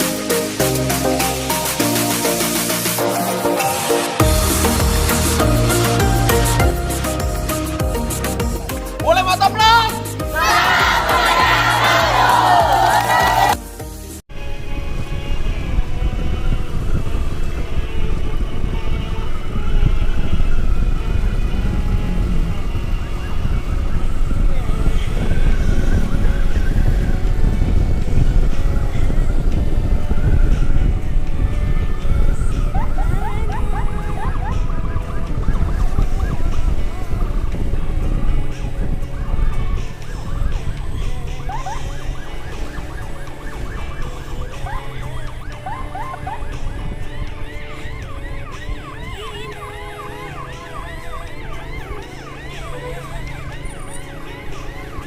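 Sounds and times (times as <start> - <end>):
emergency siren wailing: 0.0 - 13.6, 14.3 - 55.0
wind: 0.0 - 55.0
motorcycle engine and road rumble: 13.5 - 55.0.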